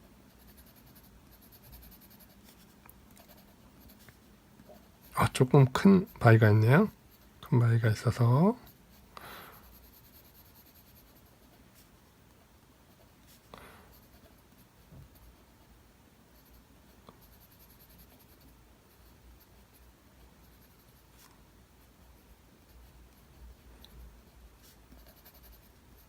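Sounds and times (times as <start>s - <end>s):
pencil scratching on paper: 0.3s - 11.9s, 12.9s - 15.6s, 17.2s - 26.0s.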